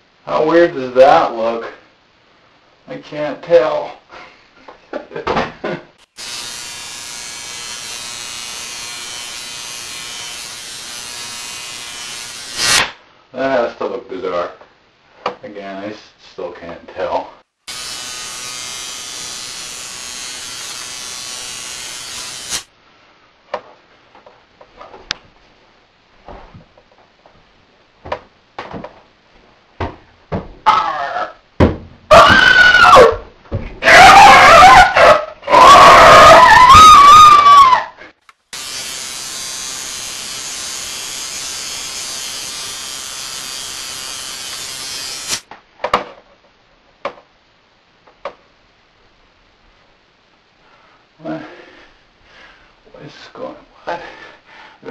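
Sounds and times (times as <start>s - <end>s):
electric hair clippers buzzing: 6.2s - 12.8s, 17.7s - 22.7s, 38.5s - 45.4s
man screeching: 30.6s - 31.4s, 32.1s - 33.2s, 33.8s - 38.0s.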